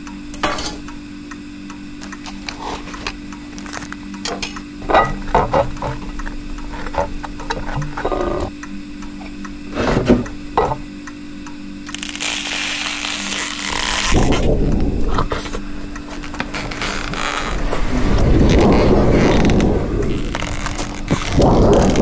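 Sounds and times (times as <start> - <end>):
steady low hum: 0.0 - 22.0
hiss: 11.9 - 22.0.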